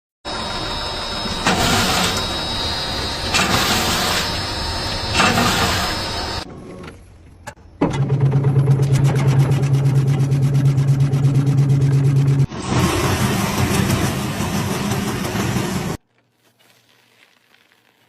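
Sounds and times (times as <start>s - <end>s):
machinery running with surges: 0.3s - 6.5s, 8.0s - 16.0s
machine humming and pulsing: 0.3s - 6.9s, 7.6s - 16.0s.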